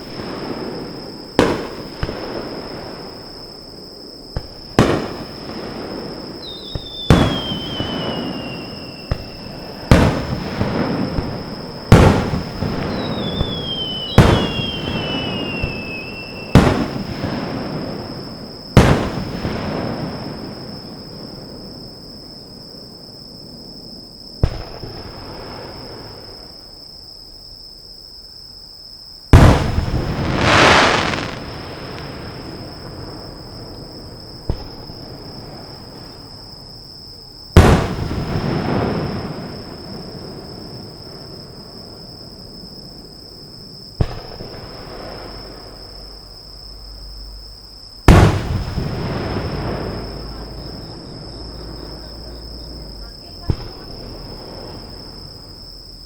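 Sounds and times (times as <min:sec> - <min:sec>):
fireworks booming: 0:00.0 - 0:26.7, 0:29.3 - 0:56.0
rolling rumble and crackle: 0:29.4 - 0:56.0.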